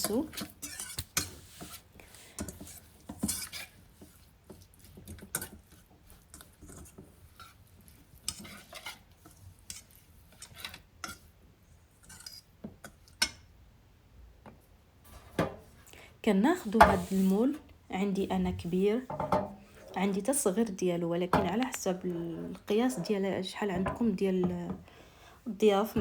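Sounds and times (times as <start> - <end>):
spoon stirring thick sauce: 0.0 - 11.4.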